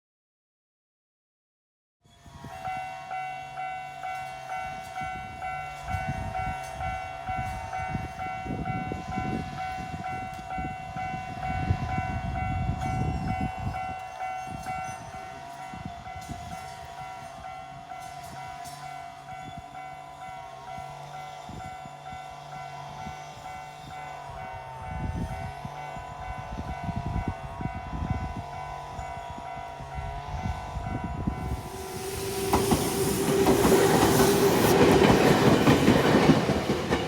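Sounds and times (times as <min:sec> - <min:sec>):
electric train passing: 0:02.1 - 0:37.0
level-crossing warning bell: 0:02.3 - 0:37.0
train wheel clatter: 0:31.2 - 0:37.0.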